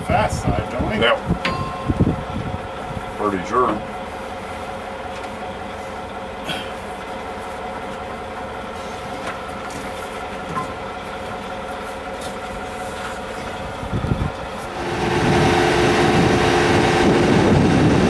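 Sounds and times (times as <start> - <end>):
combine harvester drone: 0.0 - 18.0.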